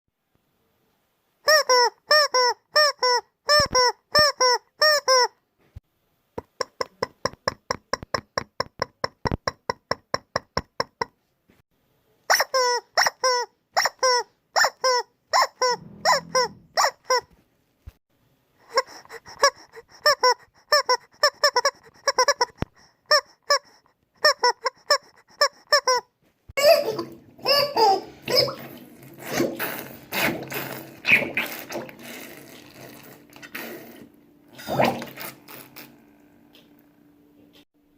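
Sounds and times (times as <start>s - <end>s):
rubber chicken squawking: 18.7s - 26.0s.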